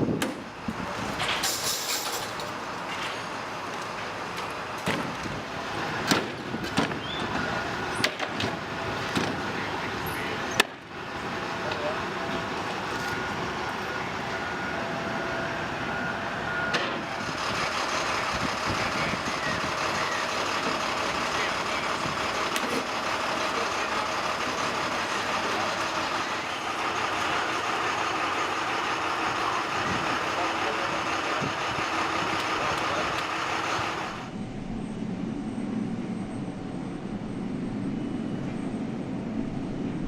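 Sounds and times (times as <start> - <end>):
vehicle engine running: 2.1 - 40.0
sharp knocks and clanks: 4.8 - 5.3, 6.0 - 7.1, 8.0 - 9.4.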